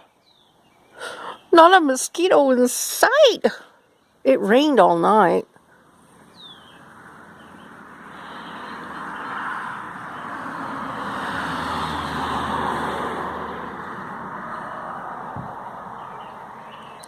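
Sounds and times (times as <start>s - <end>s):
vehicle passing on road: 5.4s - 17.0s.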